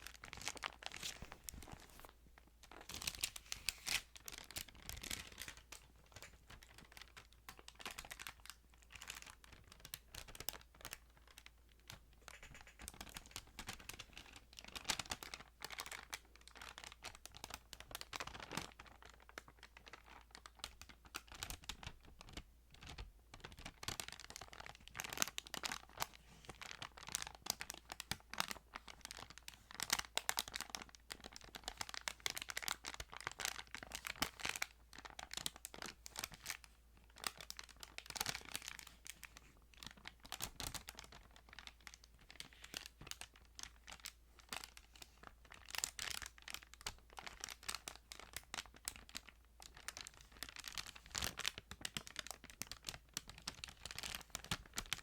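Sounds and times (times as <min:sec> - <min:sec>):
thin pages rustling: 0:00.3 - 0:02.2.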